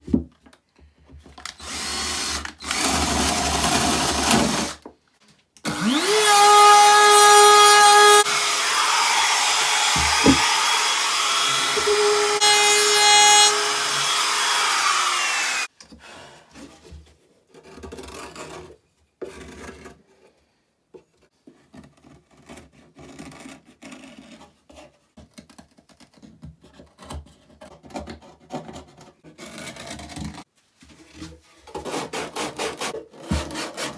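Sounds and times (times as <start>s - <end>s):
power tool whining: 1.6s - 4.8s, 5.7s - 15.7s.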